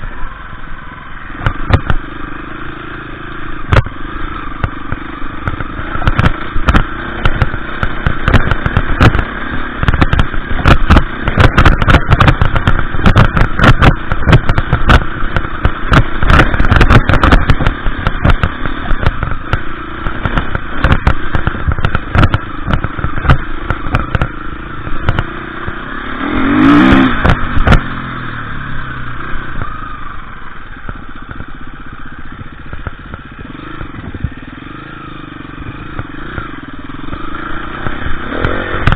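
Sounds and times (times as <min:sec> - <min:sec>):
motorcycle engine revving: 0:00.0 - 0:38.9
bike knocking against stones: 0:01.4 - 0:02.0, 0:03.7 - 0:24.4, 0:25.0 - 0:25.8.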